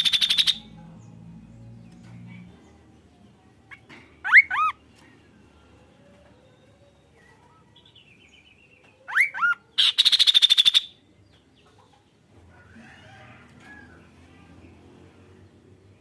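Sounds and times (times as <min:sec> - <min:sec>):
bird fast trill: 0:00.0 - 0:00.7.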